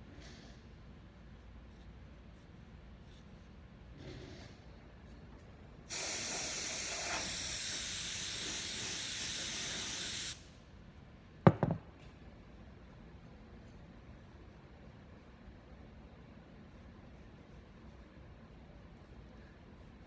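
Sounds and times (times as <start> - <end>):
spray can hissing: 5.9 - 10.4.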